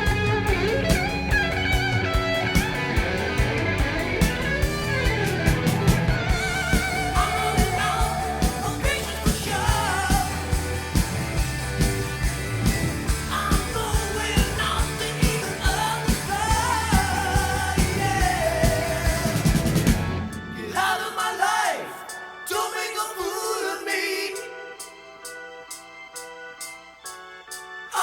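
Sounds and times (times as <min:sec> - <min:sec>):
bass: 0:00.0 - 0:20.6
drum beat: 0:00.1 - 0:20.2.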